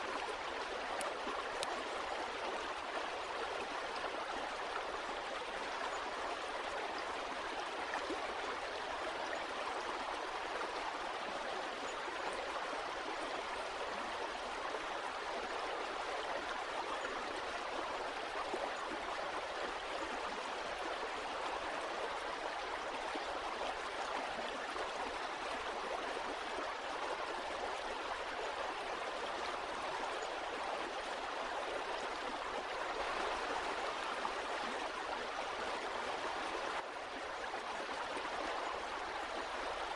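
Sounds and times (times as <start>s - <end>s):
stream of water running: 0.0s - 39.9s.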